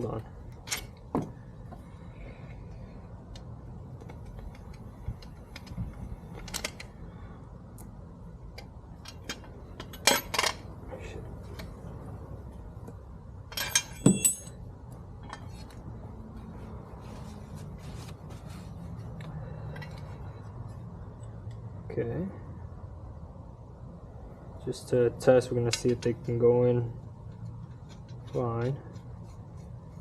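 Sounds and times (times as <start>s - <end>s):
metal parts clinking: 13.5s - 14.6s.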